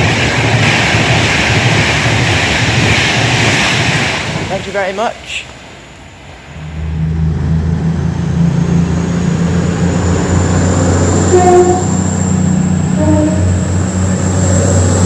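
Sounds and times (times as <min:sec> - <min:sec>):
train engine rumbling: 0:00.0 - 0:15.0
short tone: 0:11.2 - 0:12.3, 0:12.9 - 0:13.7.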